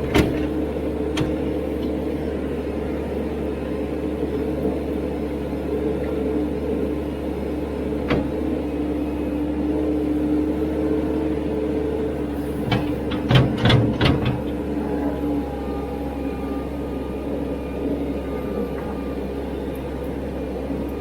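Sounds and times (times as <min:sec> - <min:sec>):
diesel engine running: 0:00.0 - 0:21.0
metal clanks: 0:12.6 - 0:14.6.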